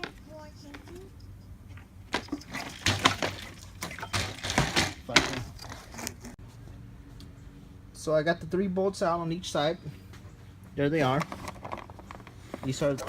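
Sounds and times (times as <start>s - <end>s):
tools and car parts clattering: 0.0s - 6.4s, 11.0s - 13.0s.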